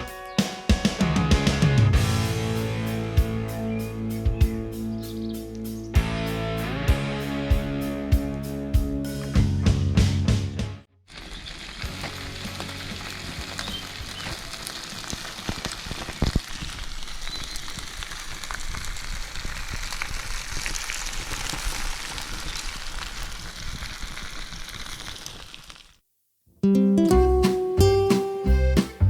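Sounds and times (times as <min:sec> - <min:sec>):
food sizzling over a campfire: 0:11.1 - 0:26.0.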